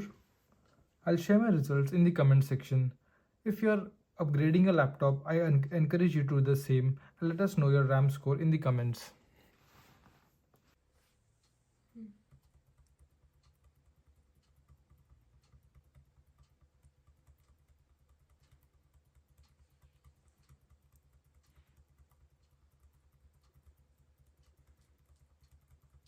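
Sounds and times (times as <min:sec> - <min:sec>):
low steady hum: 0:00.0 - 0:26.0
typing on laptop keyboard: 0:12.2 - 0:26.0.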